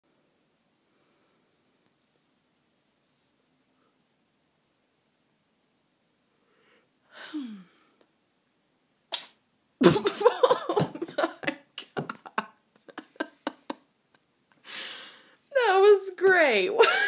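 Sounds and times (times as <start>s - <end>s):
cat sneezing: 9.1s - 9.4s.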